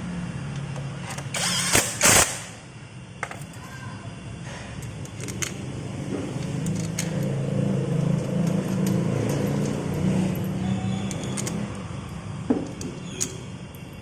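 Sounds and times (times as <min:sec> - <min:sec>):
vehicle engine rumble: 0:05.0 - 0:14.0.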